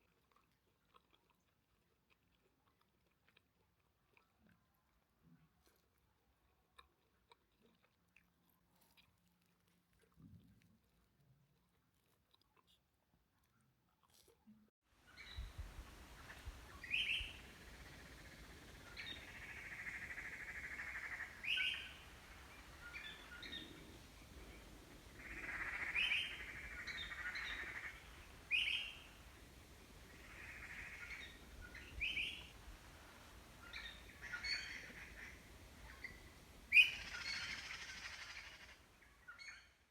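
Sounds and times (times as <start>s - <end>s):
birds chirping: 15.1s - 39.8s
birdsong: 15.1s - 39.9s.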